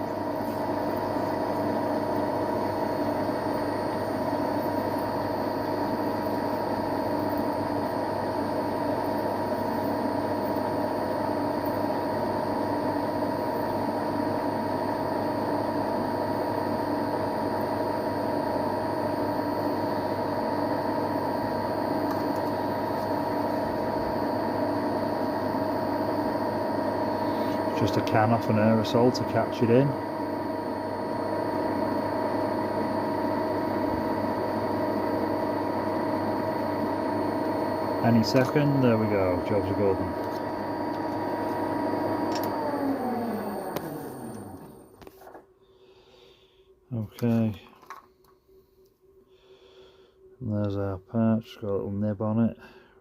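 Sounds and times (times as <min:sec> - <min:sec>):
metal lathe humming: 0:19.9 - 0:45.2.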